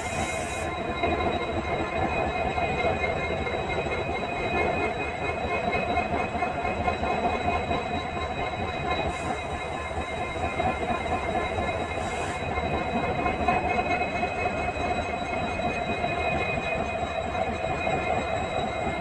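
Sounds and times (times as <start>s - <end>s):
diesel locomotive engine hum: 0.0s - 19.0s.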